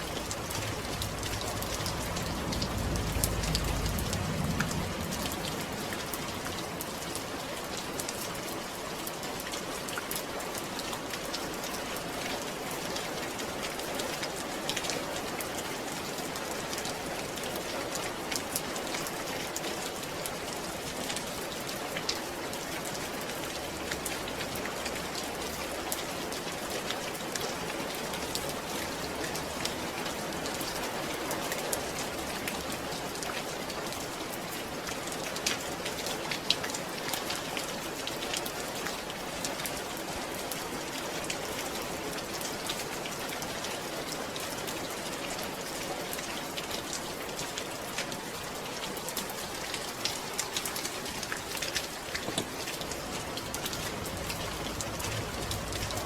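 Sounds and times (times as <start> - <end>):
raindrops ticking on a surface: 0.0 - 56.0
steady rain falling: 0.0 - 56.0.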